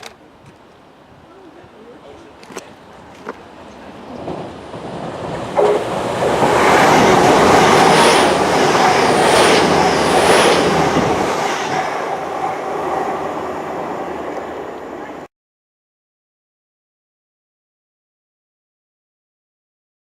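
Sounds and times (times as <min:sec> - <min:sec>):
train passing on rails: 0:00.0 - 0:15.3.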